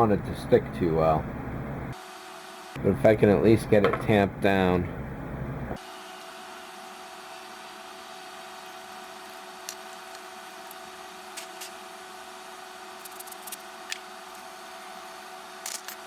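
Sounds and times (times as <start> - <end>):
background hum and hiss: 0.0 - 16.0
plastic parts clicking: 15.7 - 16.0.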